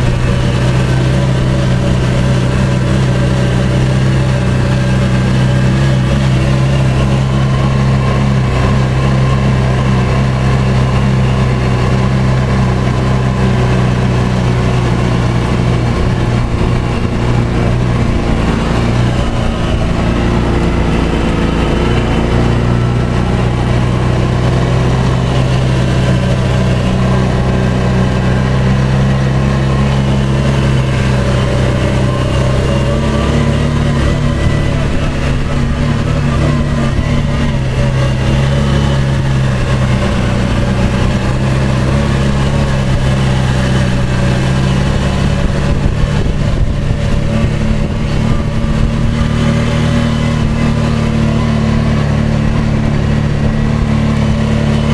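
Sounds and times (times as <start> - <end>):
vehicle engine running: 0.0 - 54.9.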